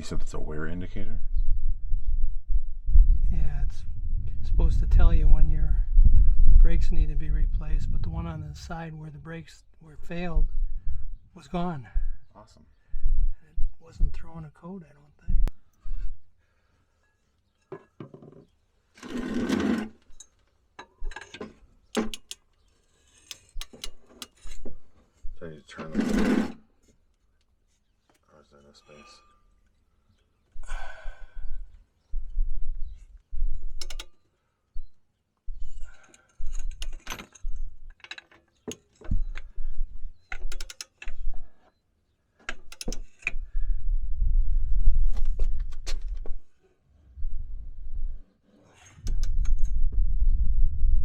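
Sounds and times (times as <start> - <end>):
low rumble: 0.9 - 9.2, 47.1 - 48.3, 49.0 - 51.0
metal tools clinking: 19.5 - 24.7, 35.6 - 39.5
mechanical rattle: 33.8 - 34.2, 40.3 - 41.3.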